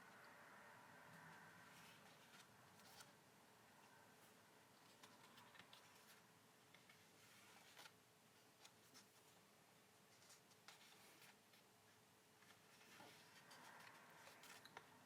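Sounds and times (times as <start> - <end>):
book pages rustling: 1.6 - 3.2, 4.2 - 11.7, 12.4 - 15.0.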